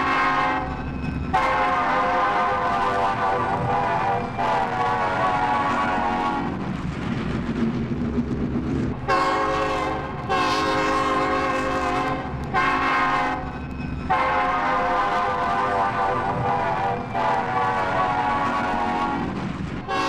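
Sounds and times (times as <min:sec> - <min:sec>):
train horn blasts: 0:00.0 - 0:06.7, 0:09.1 - 0:20.0
train rumbling: 0:00.0 - 0:20.0.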